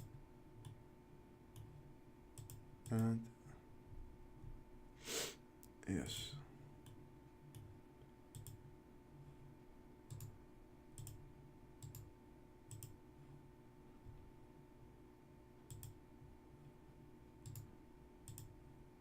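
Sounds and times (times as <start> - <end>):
computer mouse clicks: 0.0 - 0.8, 1.5 - 1.8, 2.4 - 3.1, 8.3 - 8.6, 10.1 - 10.4, 11.0 - 11.2, 11.8 - 12.1, 12.7 - 13.0, 15.7 - 16.0, 17.4 - 18.6
faint electrical hum: 0.0 - 19.0.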